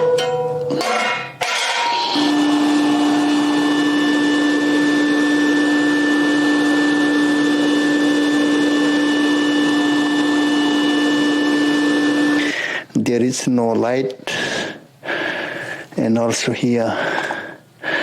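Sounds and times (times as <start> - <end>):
blower motor humming over rushing air: 2.1 - 12.9.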